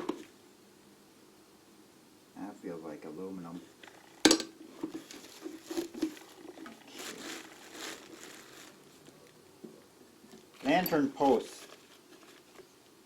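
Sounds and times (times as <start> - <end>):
rustling of parts: 3.8 - 9.4, 10.3 - 12.7.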